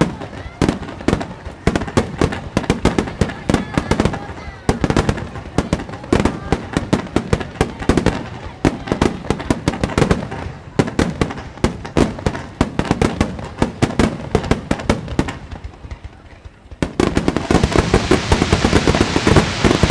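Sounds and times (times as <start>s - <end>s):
fireworks bursting: 0.0s - 19.9s.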